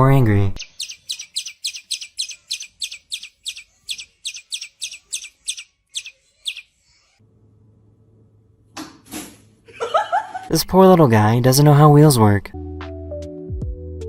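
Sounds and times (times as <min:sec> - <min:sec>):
birds calling sharply: 0:00.5 - 0:07.1.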